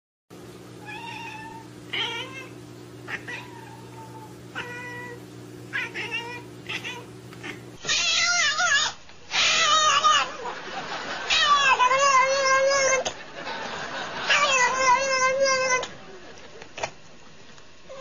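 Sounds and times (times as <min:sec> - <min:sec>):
steady low hum: 0:00.3 - 0:18.0
cat meowing: 0:00.8 - 0:10.3, 0:11.3 - 0:13.0, 0:14.3 - 0:15.9
cat wavering cry: 0:00.8 - 0:10.5, 0:11.3 - 0:13.0, 0:14.3 - 0:15.9.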